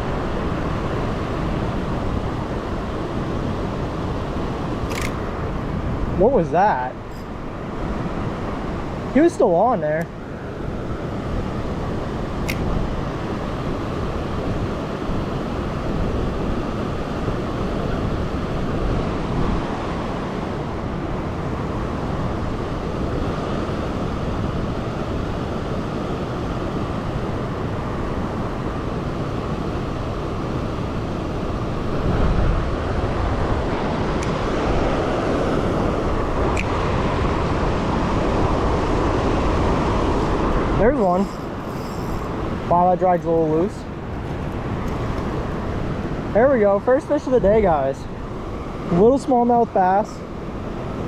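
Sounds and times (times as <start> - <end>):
river rushing: 0.0 - 51.0.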